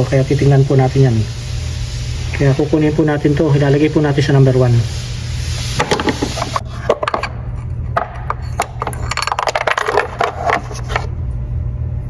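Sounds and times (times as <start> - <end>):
steady low hum: 0.0 - 12.0
hand tools clicking and clinking: 5.8 - 11.1.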